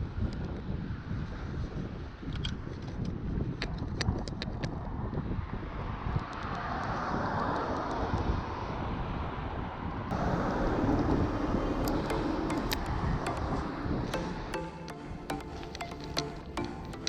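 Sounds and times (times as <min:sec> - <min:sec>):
wind buffeting microphone: 0:00.0 - 0:14.4
road and traffic rumble: 0:00.0 - 0:17.0
vehicle passing: 0:05.9 - 0:16.6
background music: 0:10.1 - 0:17.0.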